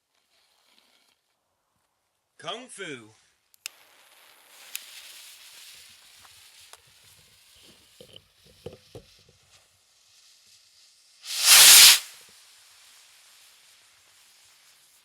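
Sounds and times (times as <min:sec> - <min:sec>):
firework fuse sizzling: 0:03.7 - 0:08.0, 0:10.0 - 0:15.0.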